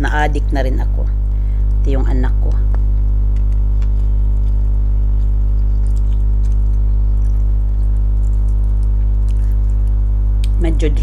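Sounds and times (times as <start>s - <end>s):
electrical hum: 0.0s - 11.0s
person eating: 2.6s - 10.6s.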